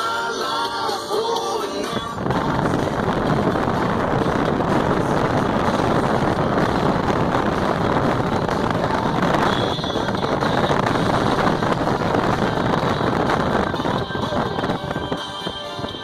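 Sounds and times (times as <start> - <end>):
motor vehicle running: 0.0 - 16.0
wind buffeting microphone: 1.7 - 16.0.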